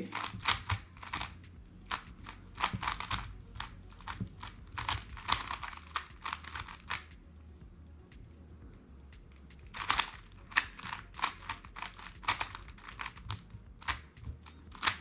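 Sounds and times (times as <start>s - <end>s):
speed cube clicking: 0.1s - 7.2s, 9.5s - 15.0s.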